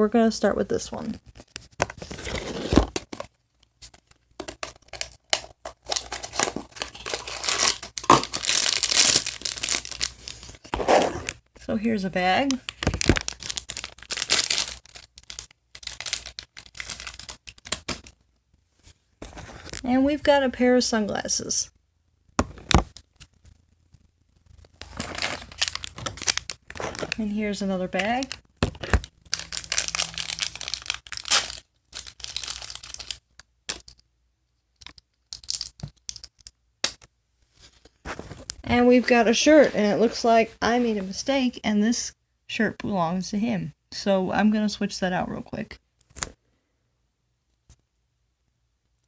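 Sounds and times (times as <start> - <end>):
plastic bag crinkling and tearing: 4.4 - 11.4, 12.4 - 18.2, 24.5 - 33.4.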